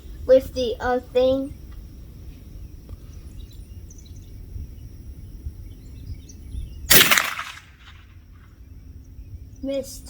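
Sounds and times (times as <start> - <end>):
birds chirping faintly: 0.0 - 7.2, 7.8 - 10.0
rifle shot crack: 6.9 - 8.1.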